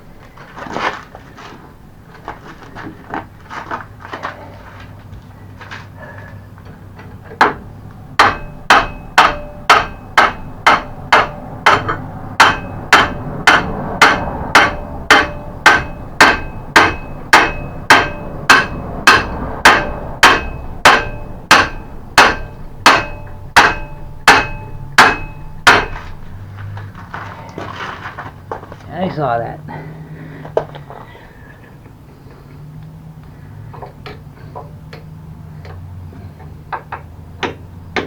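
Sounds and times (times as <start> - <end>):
hammer blows on metal: 8.2 - 26.3.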